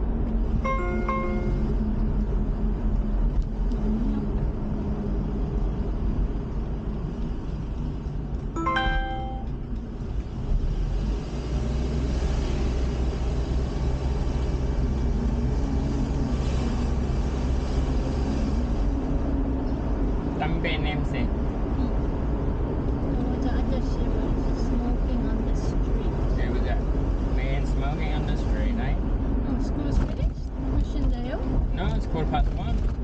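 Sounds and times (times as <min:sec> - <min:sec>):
van engine and road rumble: 0:00.0 - 0:33.0
short high-pitched sound: 0:08.6 - 0:09.6.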